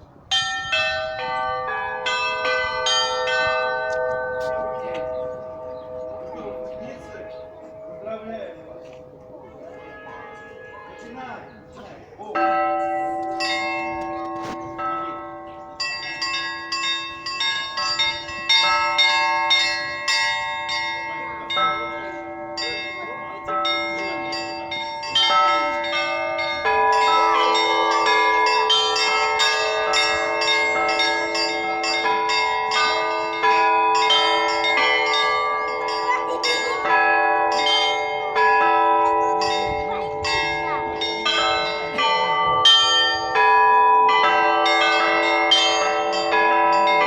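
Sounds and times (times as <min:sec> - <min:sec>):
lower church bells ringing: 0:00.0 - 0:47.0
small high bells striking: 0:12.4 - 0:47.0.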